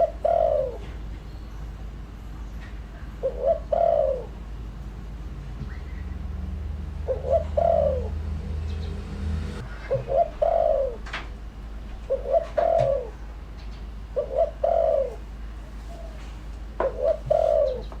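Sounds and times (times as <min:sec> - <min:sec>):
dove cooing: 0:00.0 - 0:01.0, 0:03.1 - 0:04.4, 0:07.0 - 0:08.4, 0:09.6 - 0:13.4, 0:14.1 - 0:18.0.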